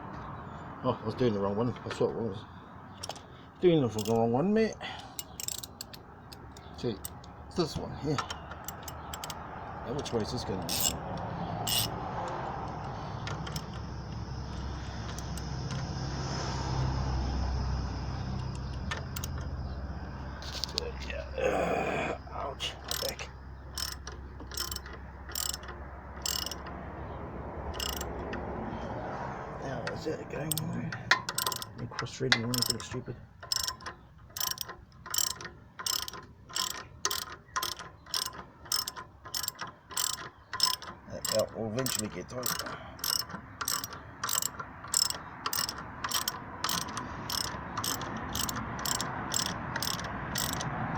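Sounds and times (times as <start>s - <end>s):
vehicle engine rumble: 0.0s - 50.9s
ratchet wrench clicking: 3.0s - 3.3s, 3.9s - 4.3s, 5.2s - 7.4s, 8.1s - 9.4s, 10.0s - 15.9s, 18.4s - 19.6s, 22.9s - 26.8s, 27.7s - 28.4s, 30.5s - 50.8s.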